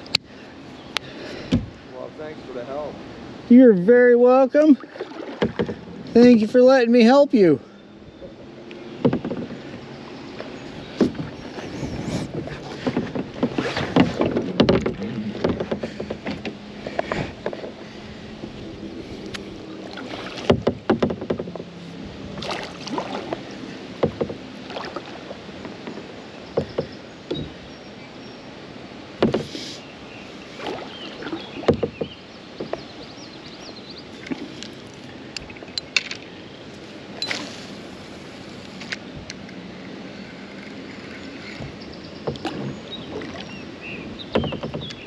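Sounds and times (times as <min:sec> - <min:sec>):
paddle splashing in water: 0:04.3 - 0:06.5, 0:08.1 - 0:45.0
sharp knocks: 0:05.3 - 0:05.8, 0:09.0 - 0:09.6, 0:12.3 - 0:16.6, 0:20.4 - 0:21.7, 0:24.0 - 0:24.4, 0:29.2 - 0:29.5, 0:31.6 - 0:32.8, 0:44.3 - 0:45.0.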